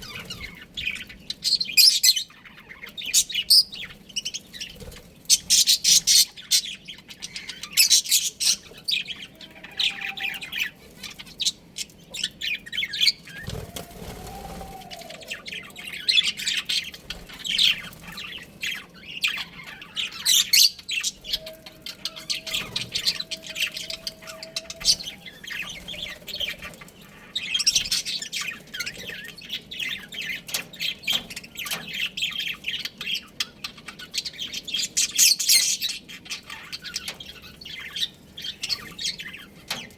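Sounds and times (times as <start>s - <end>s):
budgerigars chattering and chirping: 0.0s - 13.8s, 14.9s - 39.9s.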